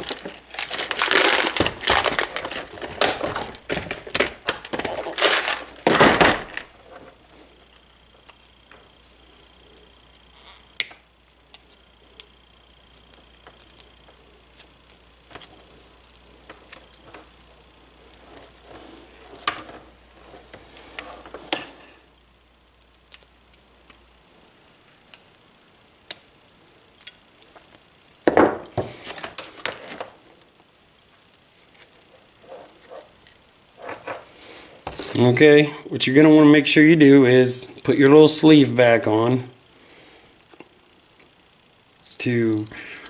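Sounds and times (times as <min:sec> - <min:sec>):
rustling: 0:00.0 - 0:22.1, 0:28.7 - 0:35.3.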